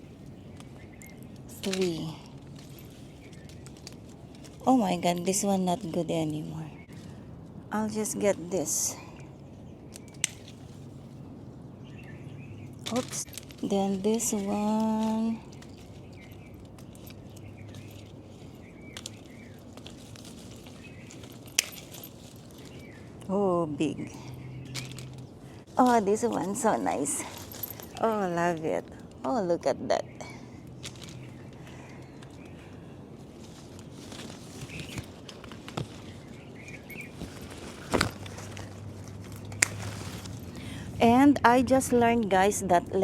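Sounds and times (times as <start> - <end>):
lemons picked from tree rustling: 0.0 - 29.7, 30.3 - 42.1
clicks of lemons being picked: 33.8 - 40.7.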